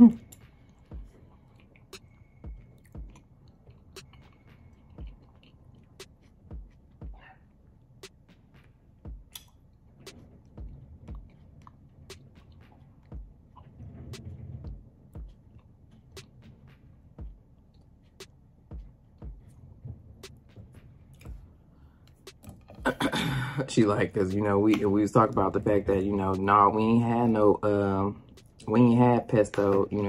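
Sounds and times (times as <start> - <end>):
person chewing food: 0.2 - 7.9, 9.2 - 9.7.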